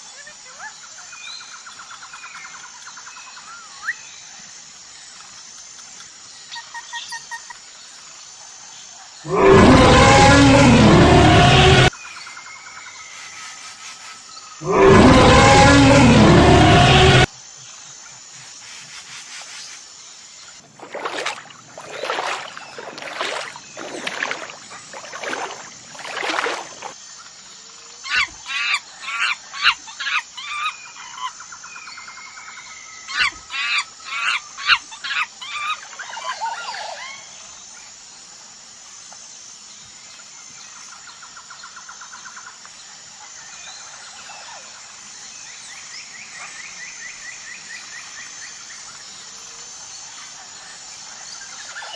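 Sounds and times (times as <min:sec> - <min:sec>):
high-pitched drone: 0:09.3 - 0:11.9, 0:14.6 - 0:17.3
loud harsh animal calls: 0:09.3 - 0:11.9, 0:14.6 - 0:17.3, 0:20.8 - 0:26.9.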